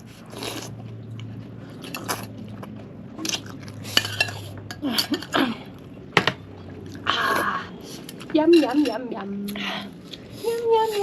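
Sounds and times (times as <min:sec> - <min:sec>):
steady low hum: 0:00.0 - 0:11.0
utensils clicking on dishes: 0:03.8 - 0:05.4.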